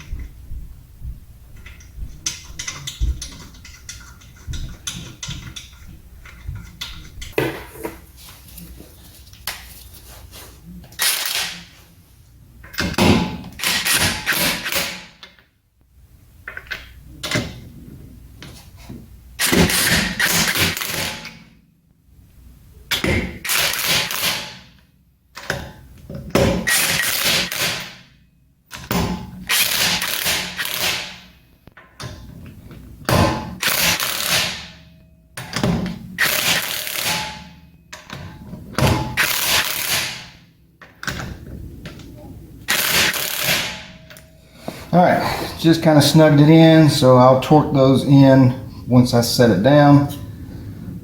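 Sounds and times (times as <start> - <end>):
hand wrench tightening lug nuts: 1.6 - 7.4, 22.9 - 24.8, 25.4 - 28.0, 28.7 - 31.2, 33.5 - 34.8, 35.4 - 40.3, 42.7 - 44.8.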